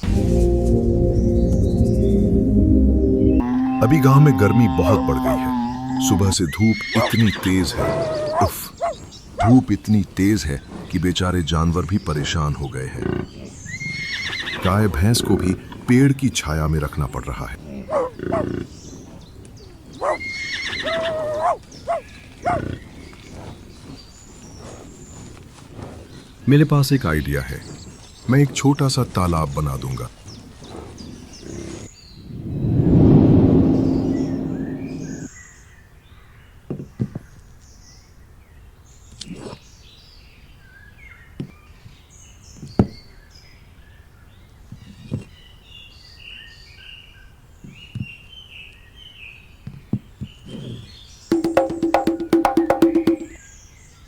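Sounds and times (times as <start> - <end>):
loud low drawn-out sound: 0.0 - 5.3, 32.3 - 35.3
birds chirping: 0.0 - 35.4, 50.2 - 53.9
outdoor ambience: 0.0 - 35.4
farm animal calling: 3.4 - 11.1, 12.2 - 15.8, 17.6 - 24.0
short sharp knocks: 51.3 - 53.4.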